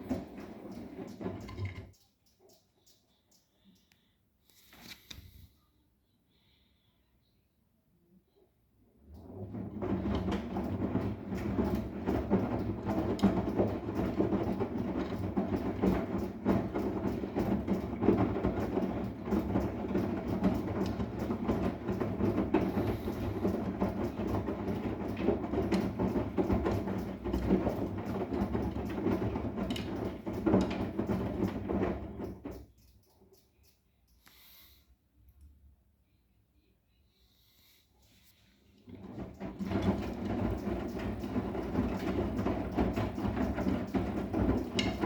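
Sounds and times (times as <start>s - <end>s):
laundry knocking in drum: 0.0s - 1.8s, 9.2s - 32.7s, 38.9s - 45.0s
washing machine running: 0.0s - 2.0s, 9.0s - 33.2s, 38.8s - 45.0s.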